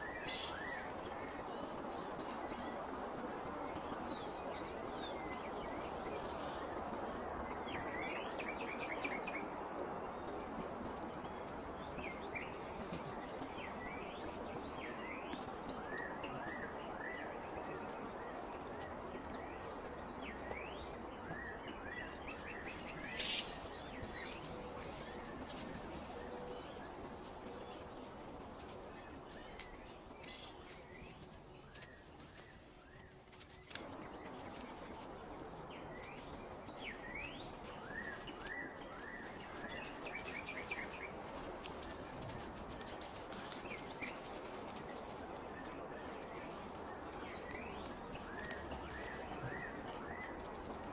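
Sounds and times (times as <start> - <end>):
small birds chirping: 0.0 - 9.5, 10.2 - 50.9
outdoor background hiss: 0.0 - 50.9.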